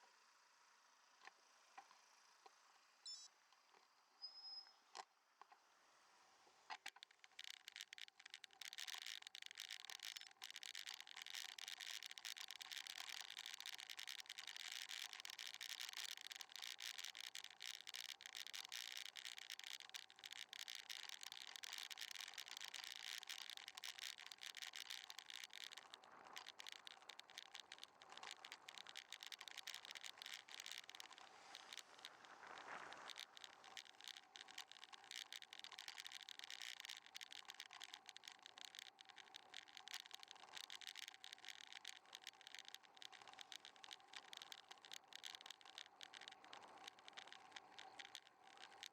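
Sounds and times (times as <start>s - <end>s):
bicycle rolling on road: 6.7s - 48.9s.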